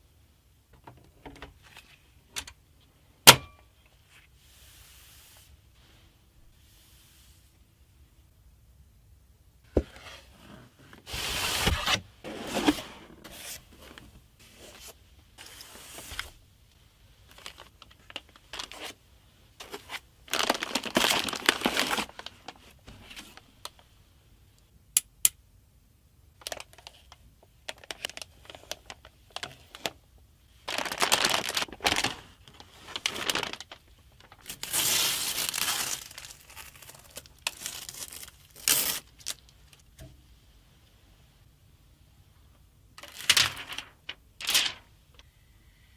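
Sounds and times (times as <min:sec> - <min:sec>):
packaging crinkling and tearing: 0:17.3 - 0:19.0, 0:19.6 - 0:22.6, 0:26.4 - 0:30.0, 0:30.7 - 0:39.8.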